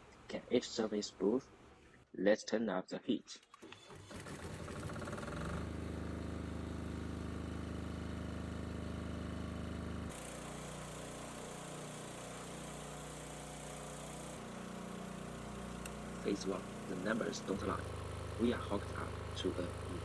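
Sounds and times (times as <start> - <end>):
diesel generator running: 3.9 - 20.0.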